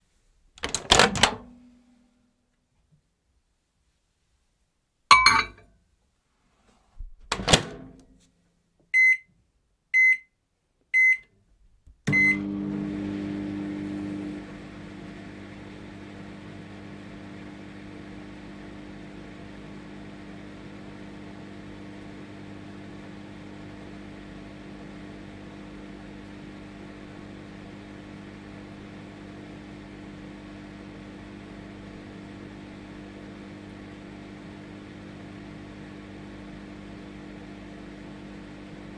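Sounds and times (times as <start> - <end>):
microwave door clunks: 0.6 - 1.5, 5.1 - 5.6, 7.3 - 8.0
microwave electric hum: 0.6 - 1.9, 12.1 - 38.9.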